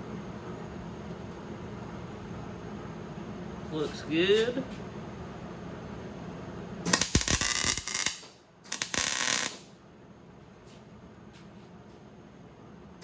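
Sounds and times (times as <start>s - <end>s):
mig welding crackling hiss: 6.9s - 9.7s.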